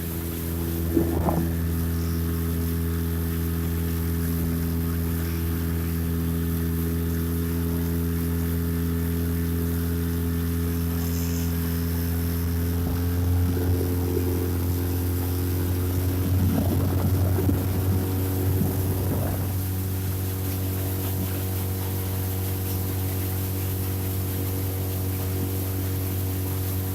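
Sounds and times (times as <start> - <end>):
boat motor droning: 0.0 - 26.9
rough mechanical noise: 0.0 - 26.9.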